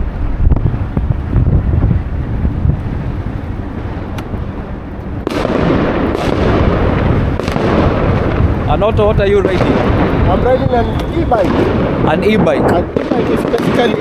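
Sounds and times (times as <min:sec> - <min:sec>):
dense loud crackling: 0:00.0 - 0:14.0
wind rumble on microphone: 0:00.0 - 0:14.0
fireworks and firecrackers: 0:05.2 - 0:14.0.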